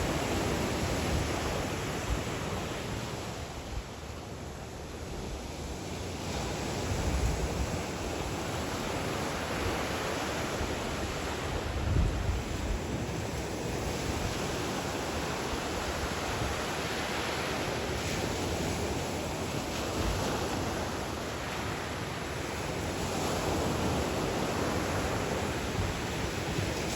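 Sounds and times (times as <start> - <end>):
wind hitting microphone: 11.6 - 14.5.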